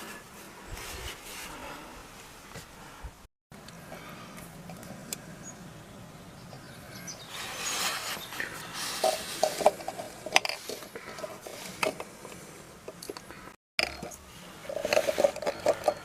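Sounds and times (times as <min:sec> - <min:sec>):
rubbing scraping on material: 0:07.3 - 0:12.3.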